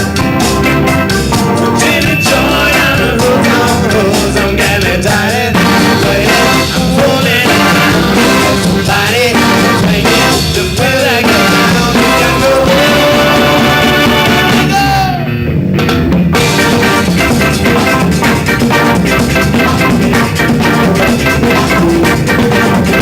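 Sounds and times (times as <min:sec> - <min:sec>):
cymbals: 0:00.0 - 0:14.9, 0:15.6 - 0:23.0
person singing: 0:00.0 - 0:15.4
live rock band playing: 0:00.0 - 0:23.0.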